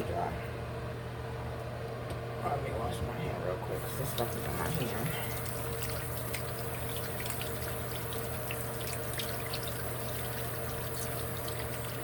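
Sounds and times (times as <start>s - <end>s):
tap water running into sink: 3.8s - 12.0s.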